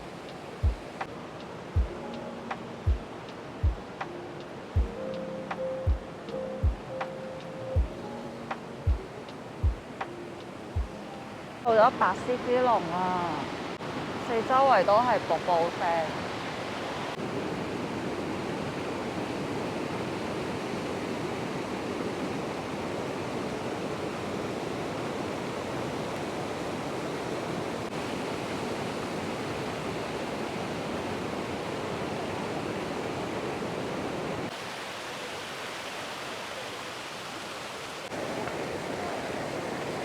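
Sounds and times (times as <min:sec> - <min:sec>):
waterfall rushing: 0:00.0 - 0:40.0.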